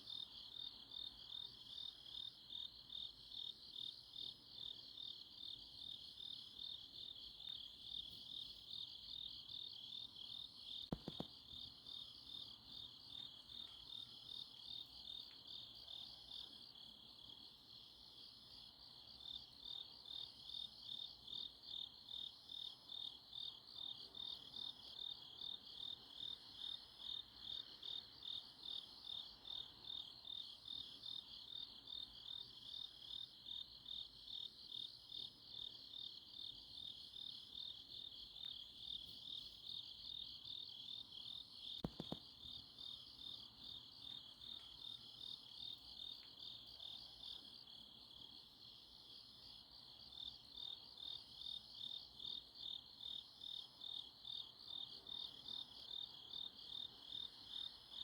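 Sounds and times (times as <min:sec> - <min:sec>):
crickets chirping: 0:00.0 - 0:58.0
faint knock: 0:10.9 - 0:11.3.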